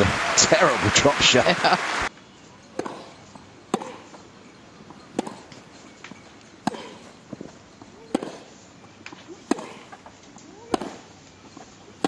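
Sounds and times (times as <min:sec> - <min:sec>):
rackets striking tennis ball: 0:02.6 - 0:12.0.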